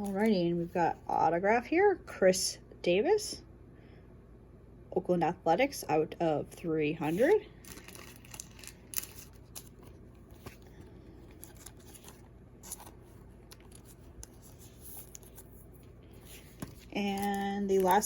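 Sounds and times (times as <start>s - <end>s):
low steady hum: 0.0s - 18.0s
trading cards rustling and clicking: 7.0s - 18.0s.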